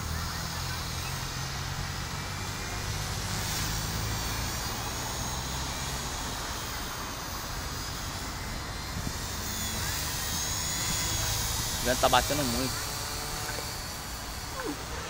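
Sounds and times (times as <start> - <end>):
rc helicopter whine: 0.0 - 15.0
wind rumble on microphone: 8.8 - 9.5.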